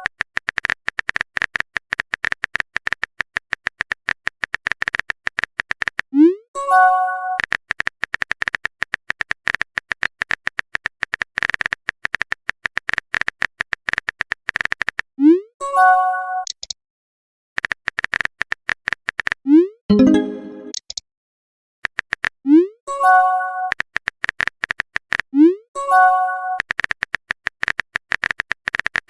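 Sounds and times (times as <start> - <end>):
rapid electronic clicks: 0.0 - 6.1, 7.4 - 15.1, 23.7 - 25.3, 26.6 - 29.0.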